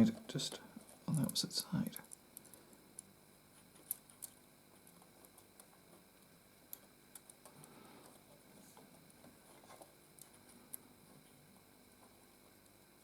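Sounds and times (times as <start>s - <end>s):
faint clicks and handling sounds: 0.1s - 13.0s.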